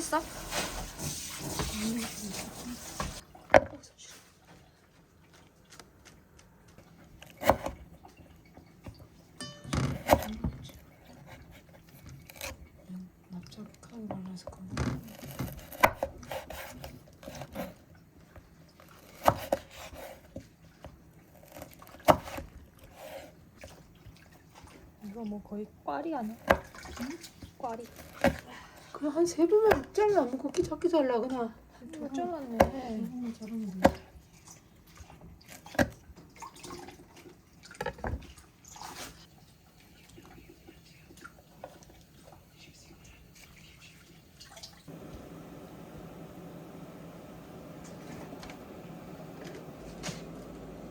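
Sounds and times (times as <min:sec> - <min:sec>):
knife chopping on cutting board: 0:07.4 - 0:07.8, 0:19.2 - 0:20.0.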